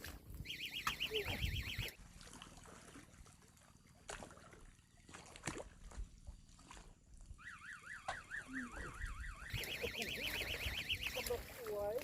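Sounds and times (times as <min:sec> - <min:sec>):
electronic alarm tone warbling: 0:00.4 - 0:02.0, 0:07.4 - 0:11.6.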